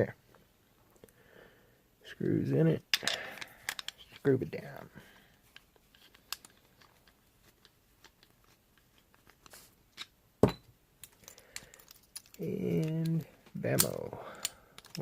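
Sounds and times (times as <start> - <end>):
man speaking: 2.0 - 2.9, 4.2 - 5.0, 12.4 - 14.4.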